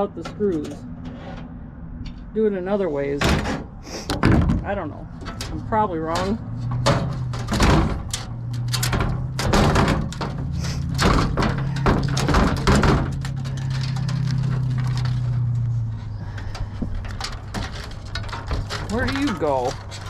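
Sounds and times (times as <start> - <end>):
metal parts clicking and knocking: 3.4 - 15.5, 16.3 - 20.0.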